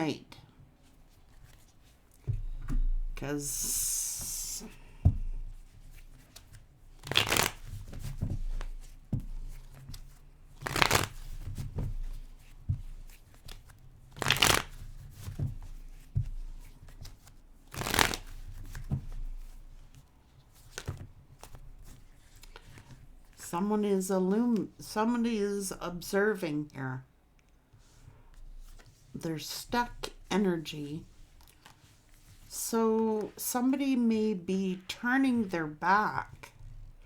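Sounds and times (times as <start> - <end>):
cards being shuffled: 5.9 - 23.0.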